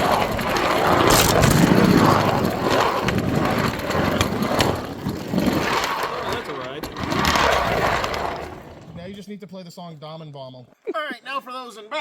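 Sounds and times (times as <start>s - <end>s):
turntable rolling rumble: 0.0s - 9.2s.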